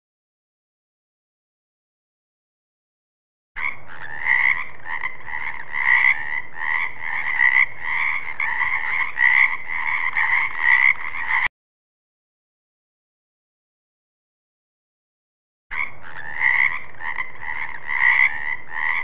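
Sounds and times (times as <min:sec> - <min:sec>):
frog croaking: 0:03.6 - 0:11.5, 0:15.7 - 0:19.0.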